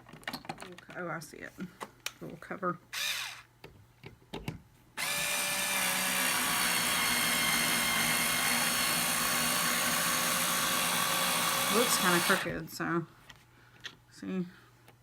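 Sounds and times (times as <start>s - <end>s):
electric screwdriver running: 3.0s - 3.5s, 5.0s - 12.6s.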